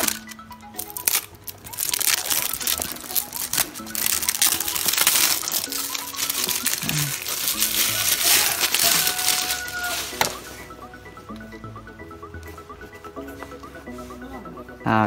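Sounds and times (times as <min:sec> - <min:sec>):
packaging crinkling and rustling: 0:00.0 - 0:10.6.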